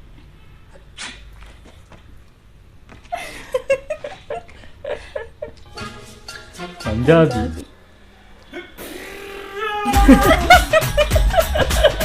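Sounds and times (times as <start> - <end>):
person's breathy vocal bursts: 8.5 - 10.0.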